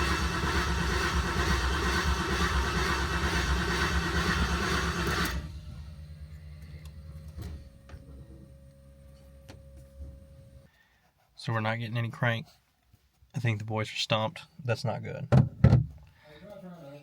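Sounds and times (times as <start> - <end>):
engine cranking by starter motor: 0.0 - 9.5.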